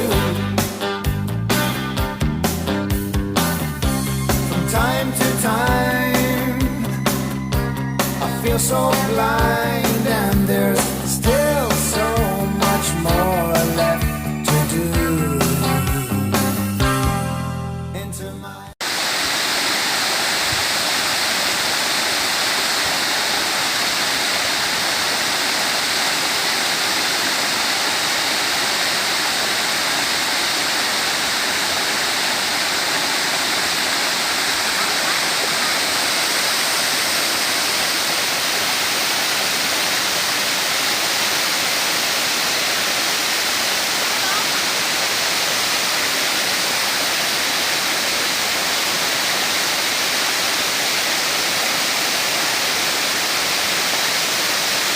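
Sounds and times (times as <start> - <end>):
waterfall rushing: 18.8 - 54.9.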